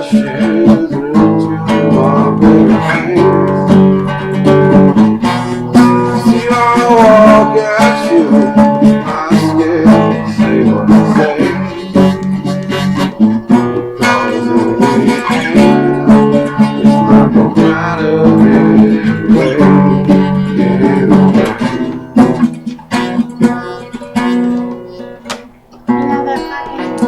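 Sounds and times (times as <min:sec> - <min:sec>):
acoustic guitar strumming: 0:00.0 - 0:27.0.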